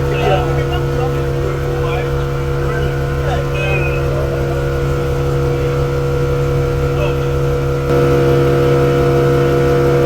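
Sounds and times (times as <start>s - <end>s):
motorboat engine running: 0.0s - 10.0s.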